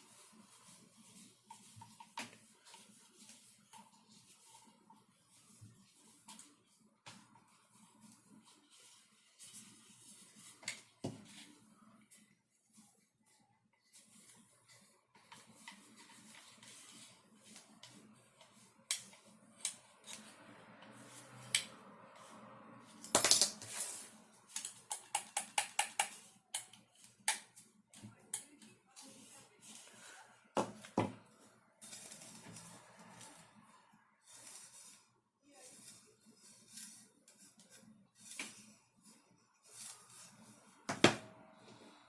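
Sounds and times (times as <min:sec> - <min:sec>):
plastic parts clicking and knocking: 0:24.6 - 0:27.6.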